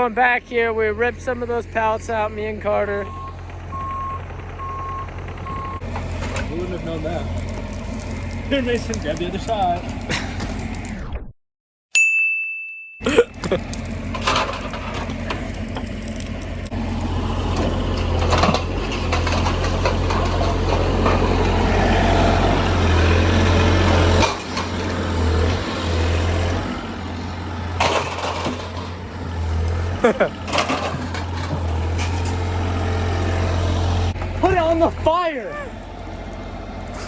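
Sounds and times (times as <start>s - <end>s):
heavy machine engine running: 0.0s - 10.9s, 13.3s - 37.0s
ding tone: 11.9s - 13.1s
wooden pallets clattering: 13.1s - 16.6s, 17.2s - 21.7s, 27.6s - 32.6s.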